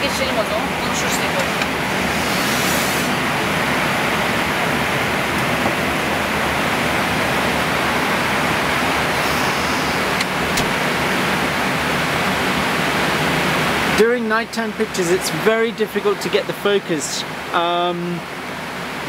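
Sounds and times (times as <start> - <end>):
airflow over cockpit windscreen: 0.0 - 14.0.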